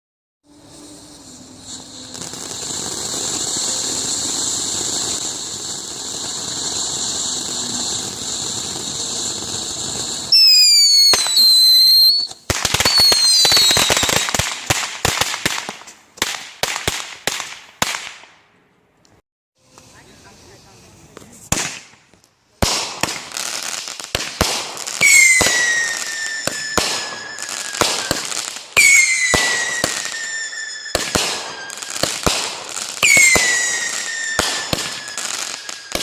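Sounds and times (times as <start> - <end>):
firework hissing: 0.4 - 17.6, 19.6 - 36.0
firework whistles: 0.4 - 18.3, 22.7 - 36.0
firework pops and bangs: 1.7 - 18.4, 21.1 - 36.0.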